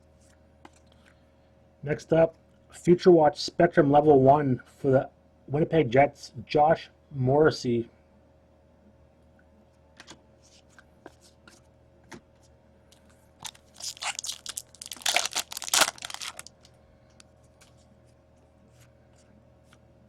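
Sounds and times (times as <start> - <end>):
foil wrapper tearing and crinkling: 13.4 - 16.7.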